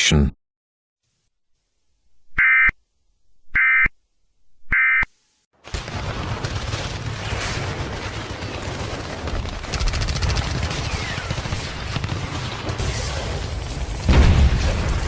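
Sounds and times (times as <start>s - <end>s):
rifle shots crackling: 5.6s - 13.2s
machine-gun burst: 5.6s - 15.0s.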